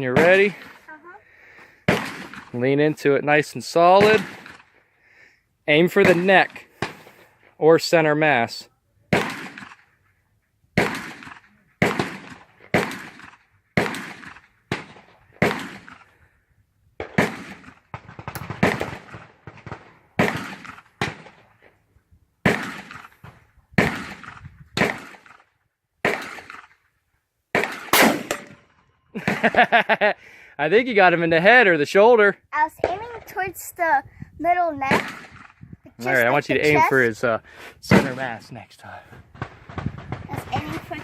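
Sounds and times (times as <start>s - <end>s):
gunshots with echo: 1.9s - 2.5s, 3.9s - 4.7s, 6.0s - 7.1s, 9.1s - 9.8s, 10.8s - 16.1s, 17.0s - 21.5s, 22.4s - 23.1s, 23.8s - 25.4s, 26.0s - 26.7s, 27.5s - 29.6s, 34.9s - 35.6s, 37.9s - 38.4s.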